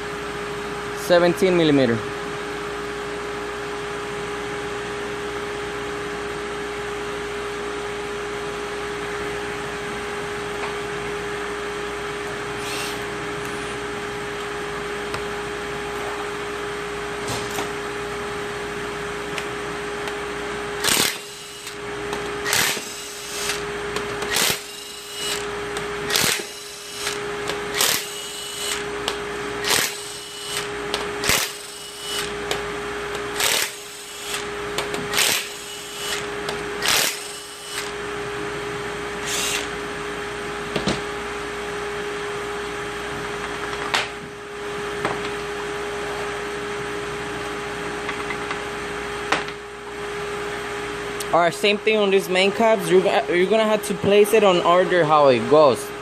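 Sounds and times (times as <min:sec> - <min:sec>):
mechanical hum: 0:00.0 - 0:56.0
power tool bursts: 0:12.6 - 0:13.0, 0:20.8 - 0:21.8, 0:22.4 - 0:23.6, 0:24.3 - 0:25.5, 0:26.1 - 0:28.8, 0:29.6 - 0:32.3, 0:33.4 - 0:34.5, 0:35.1 - 0:37.9, 0:39.2 - 0:39.7.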